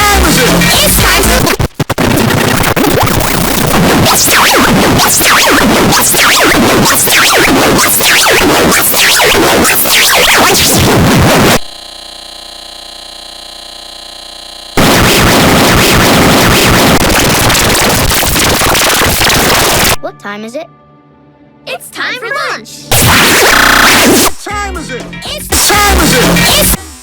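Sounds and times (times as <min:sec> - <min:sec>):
harsh distorted noise: 0:00.0 - 0:20.0, 0:22.3 - 0:27.0
steady buzzing tone: 0:00.0 - 0:20.0, 0:22.9 - 0:24.4.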